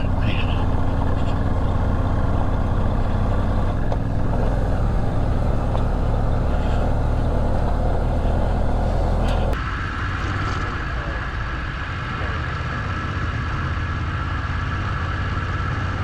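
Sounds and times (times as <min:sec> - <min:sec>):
road rumble on gravel: 0:00.0 - 0:09.6
motorcycle engine drone: 0:00.0 - 0:16.0.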